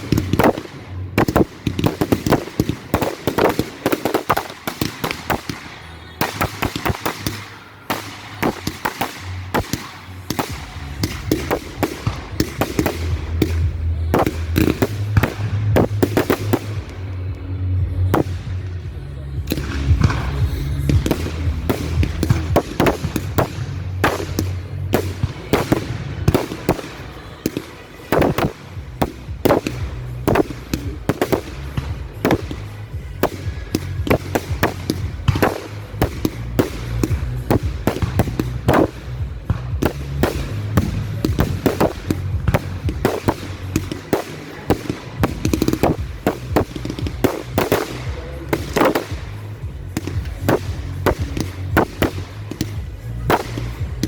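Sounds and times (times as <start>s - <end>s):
fireworks bursts and bangs: 0.0s - 54.0s
fireworks crackling: 0.0s - 54.0s
music with steady bass line: 10.3s - 27.0s, 28.6s - 54.0s.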